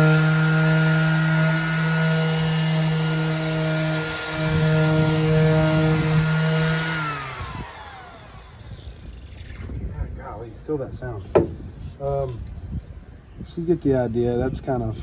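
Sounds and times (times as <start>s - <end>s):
orbital sander running: 0.0s - 9.3s
sander winding down whine: 0.0s - 9.7s.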